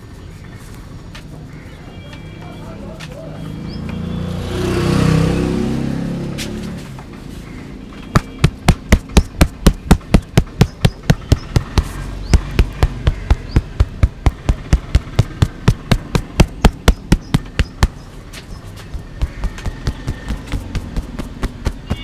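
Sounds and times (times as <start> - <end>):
hands slapping on body: 8.2 - 22.0.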